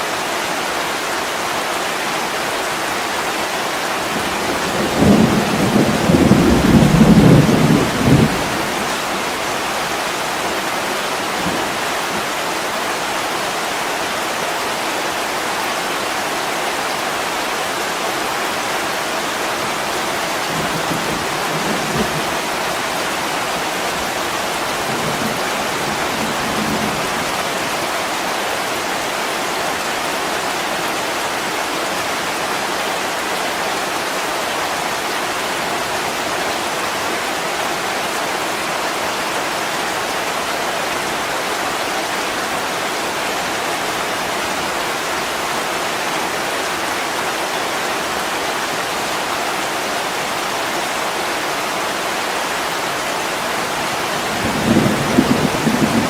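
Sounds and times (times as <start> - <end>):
heavy rain on a window: 0.1 - 56.0
thunder rumbling: 4.3 - 9.4, 53.7 - 56.0.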